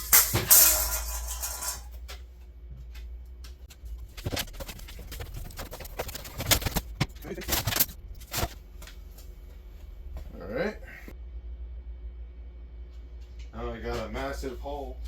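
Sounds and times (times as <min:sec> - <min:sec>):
objects knocking and clattering: 0:00.0 - 0:02.2
low steady hum: 0:00.0 - 0:15.0.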